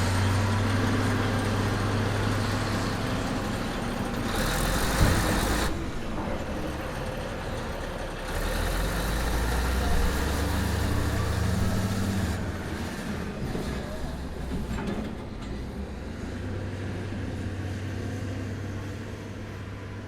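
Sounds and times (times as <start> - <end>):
heavy machinery engine rumbling: 0.0 - 20.0
machinery clunk: 4.8 - 7.2, 13.4 - 15.8.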